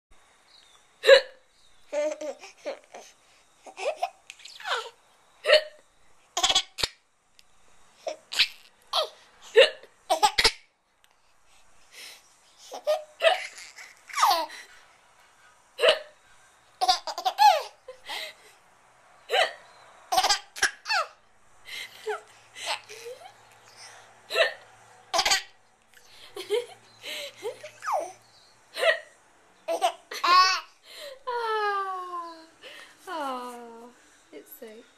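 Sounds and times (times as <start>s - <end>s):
person hiccuping: 1.0s - 1.4s.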